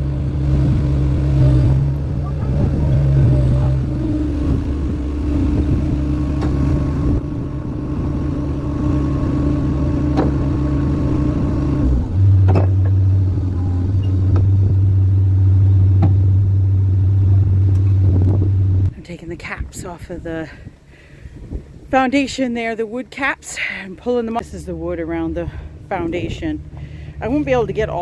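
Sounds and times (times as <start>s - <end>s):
skid steer engine running: 0.0s - 19.7s, 23.2s - 28.0s
sharp knocks: 10.1s - 10.5s, 12.4s - 13.0s, 15.9s - 16.4s.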